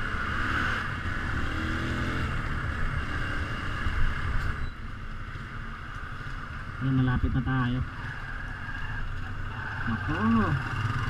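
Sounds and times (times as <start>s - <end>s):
wind and road noise: 0.0s - 11.0s
motorcycle engine running: 9.2s - 11.0s.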